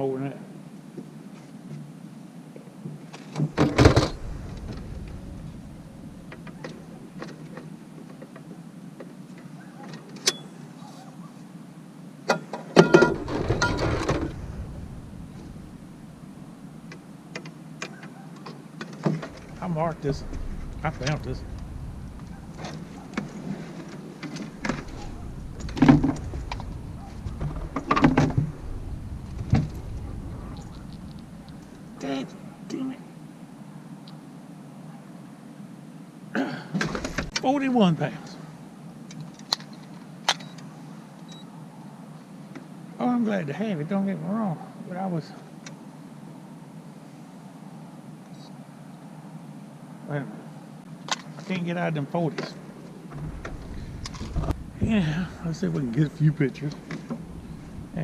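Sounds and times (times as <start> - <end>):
handling knocks and rattles: 12.3 - 14.8, 17.4 - 31.8
knocks and thumps on boat: 24.6 - 28.5.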